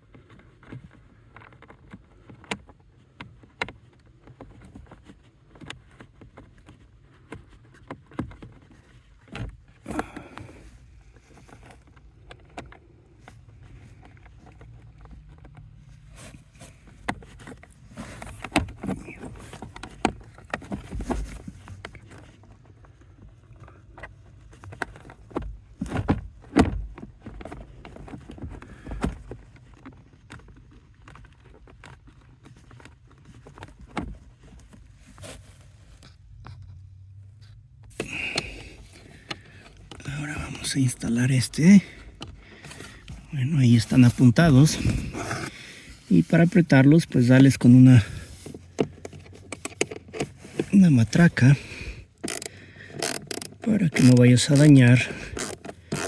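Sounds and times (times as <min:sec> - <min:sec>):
hands and tools clicking and knocking: 0:52.2 - 0:56.0.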